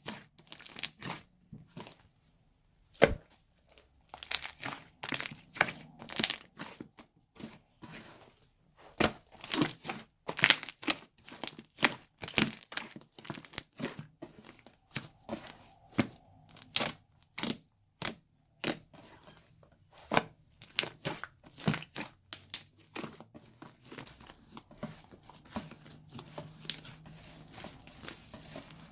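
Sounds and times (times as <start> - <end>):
slime squished by hand: 3.8 - 6.9, 9.2 - 18.9.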